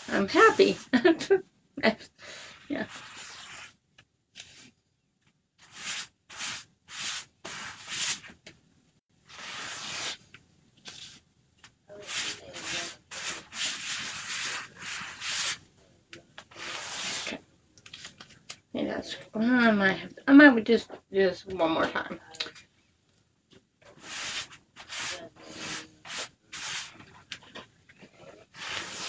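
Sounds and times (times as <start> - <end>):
rubbing swipes on transfer: 2.8 - 3.8, 11.9 - 15.6.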